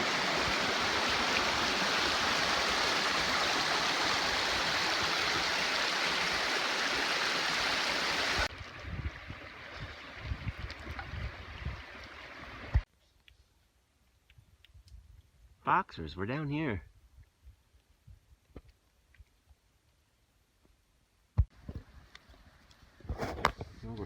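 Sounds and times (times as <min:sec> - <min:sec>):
water rushing down rapids: 0:00.0 - 0:08.5.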